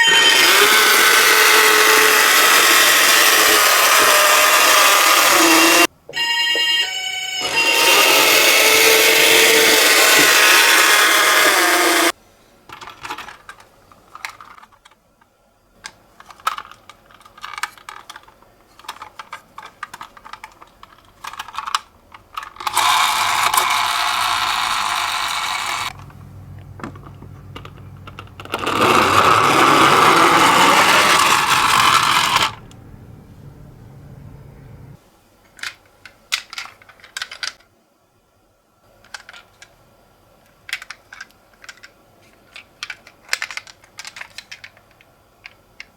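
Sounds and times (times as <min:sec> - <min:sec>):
plastic toys clicking and clattering: 0:00.0 - 0:05.6, 0:07.6 - 0:15.0, 0:15.8 - 0:32.8, 0:35.4 - 0:37.7, 0:38.9 - 0:39.8, 0:40.4 - 0:45.9
toy ambulance siren bursts: 0:00.0 - 0:12.1
low steady hum: 0:25.9 - 0:30.0, 0:31.0 - 0:35.0.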